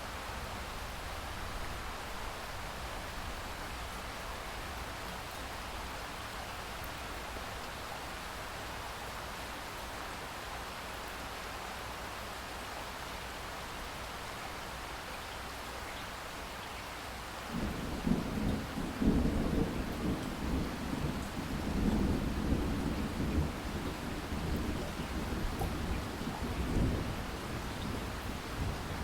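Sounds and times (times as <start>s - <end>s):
rain hiss: 0.0s - 29.0s
thunder rumble: 17.5s - 29.0s.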